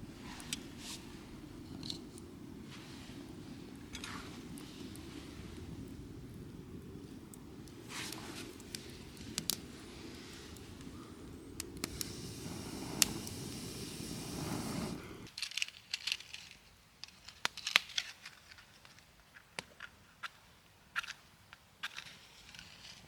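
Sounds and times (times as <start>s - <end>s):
low rushing noise: 0.0s - 15.3s
campfire crackling and popping: 0.0s - 20.4s.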